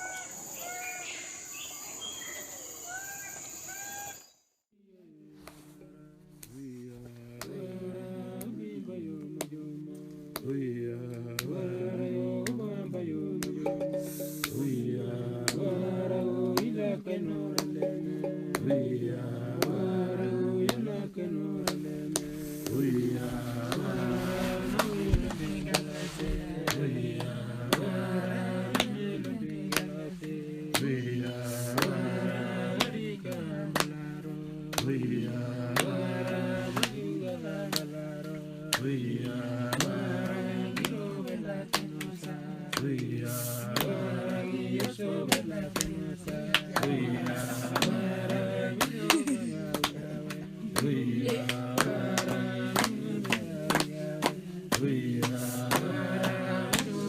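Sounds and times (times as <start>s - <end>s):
sharp percussive strikes: 13.4s - 15.8s, 17.6s - 19.8s
sliding sustained tones: 17.3s - 37.6s.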